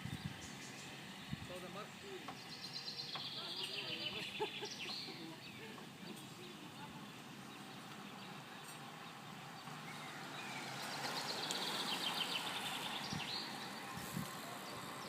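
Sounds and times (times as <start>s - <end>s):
songbird singing fast trill: 2.3s - 5.7s, 7.5s - 13.9s.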